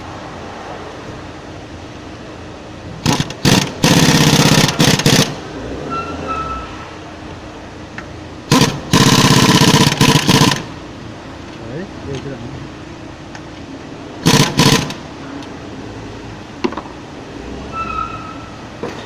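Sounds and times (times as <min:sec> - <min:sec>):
impact wrench tightening bolts: 0:03.0 - 0:05.3.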